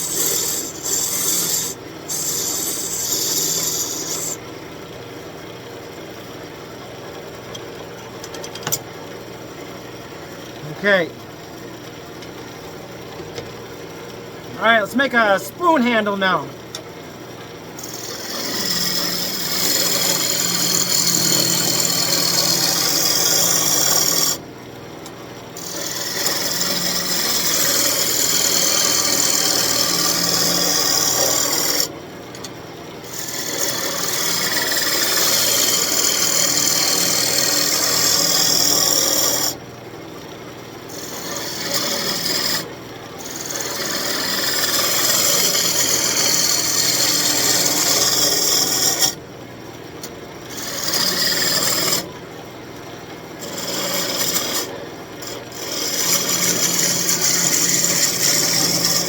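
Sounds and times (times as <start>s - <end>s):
hissing scrape of wood being cut: 0.0s - 4.4s, 17.8s - 24.4s
lathe motor hum: 0.0s - 4.4s, 17.8s - 24.4s, 25.6s - 31.9s, 33.1s - 39.5s, 40.9s - 49.2s, 50.5s - 52.1s, 53.4s - 59.0s.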